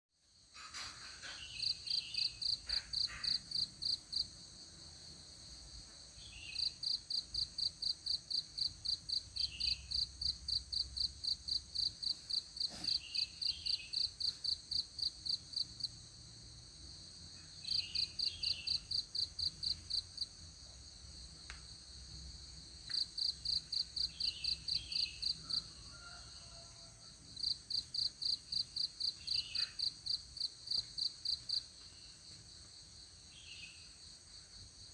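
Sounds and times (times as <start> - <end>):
insects chirping in rapid pulse: 0.3 - 21.3, 21.9 - 25.6.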